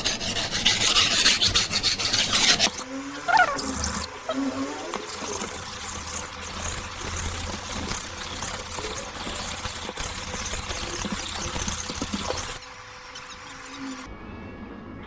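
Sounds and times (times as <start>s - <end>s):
steel blade scraping on wet whetstone: 0.0s - 4.3s, 4.9s - 12.6s.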